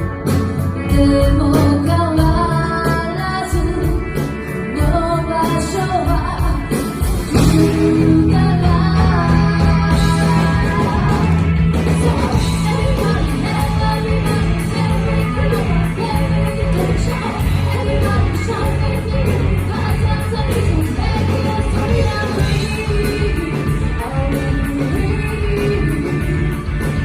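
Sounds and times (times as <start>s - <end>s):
electric guitar: 0.0s - 27.0s
person singing: 0.0s - 27.0s
rock band playing: 0.0s - 27.0s
heavy bass line: 7.0s - 27.0s.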